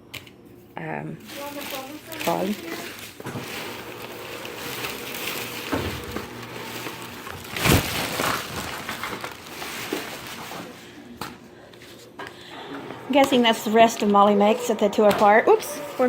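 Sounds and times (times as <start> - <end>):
packaging crunch: 1.2 - 10.8
paper and plastic packaging rustling: 1.2 - 12.2.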